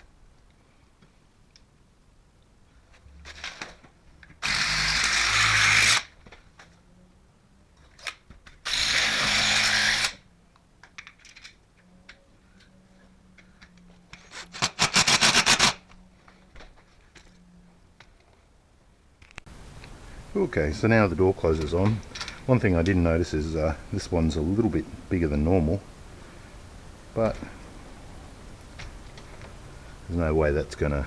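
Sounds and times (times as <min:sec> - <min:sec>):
cordless power drill running: 0:04.4 - 0:06.0, 0:08.7 - 0:10.2.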